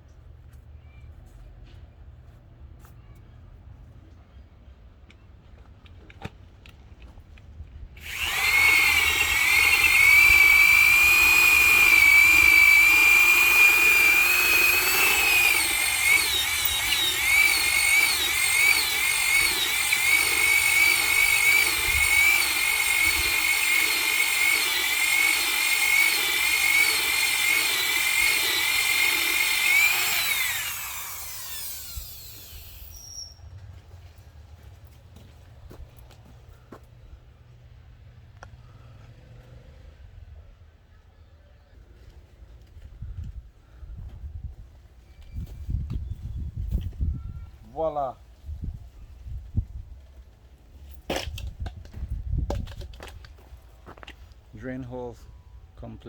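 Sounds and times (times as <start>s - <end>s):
power drill whining: 8.0s - 33.4s.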